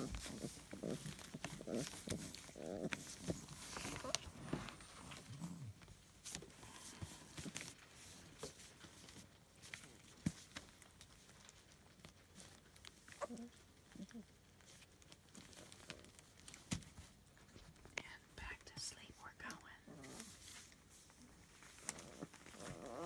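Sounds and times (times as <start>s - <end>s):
puppies whimpering and grunting: 0.0s - 7.8s, 12.3s - 16.4s, 19.9s - 20.4s, 21.1s - 23.0s.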